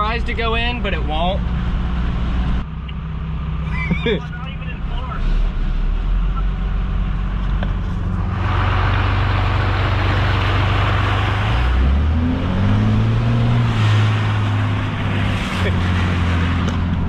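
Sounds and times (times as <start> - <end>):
diesel truck engine revving: 3.4 - 17.0
broad rushing noise: 8.2 - 17.0.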